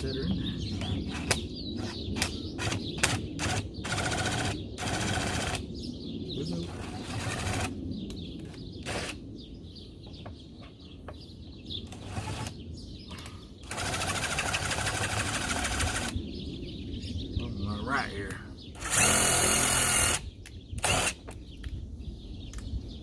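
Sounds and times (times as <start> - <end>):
sharp clicks: 0.8 - 5.6
power driver driving screw: 8.8 - 9.2, 18.8 - 20.2, 20.8 - 21.2.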